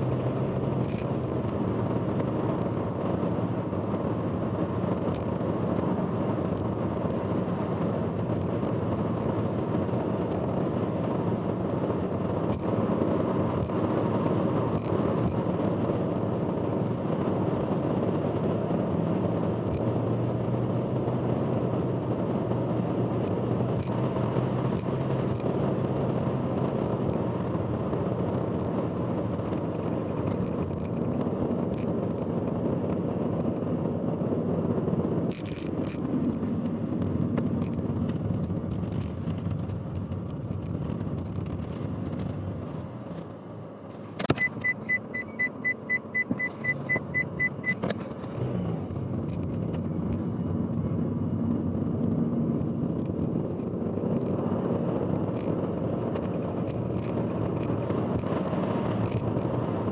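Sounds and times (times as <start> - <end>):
car road and engine rumble: 0.0 - 59.9
sharp clicks: 44.1 - 50.9.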